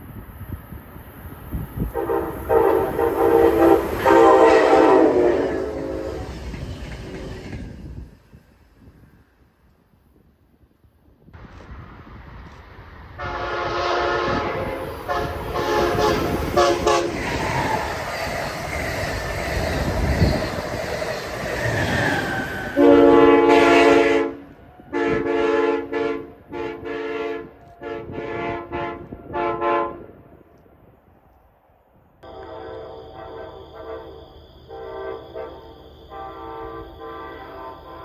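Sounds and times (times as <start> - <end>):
train rushing past: 0.0 - 10.6, 11.2 - 31.0, 32.2 - 38.0
train air horn chord: 1.9 - 6.6, 13.2 - 17.2, 22.8 - 30.3, 32.2 - 38.0.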